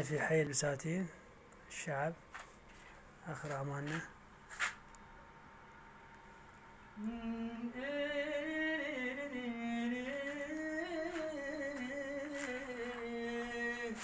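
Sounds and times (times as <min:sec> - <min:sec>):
person singing slow melody: 0:06.9 - 0:14.0.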